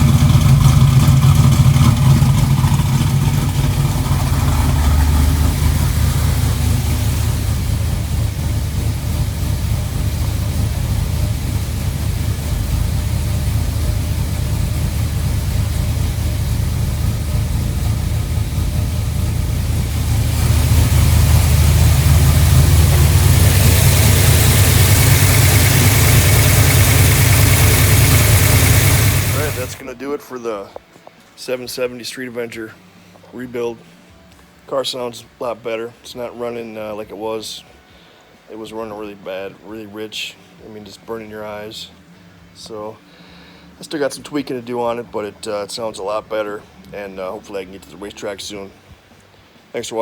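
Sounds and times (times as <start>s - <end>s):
car engine idling: 0.0s - 29.9s.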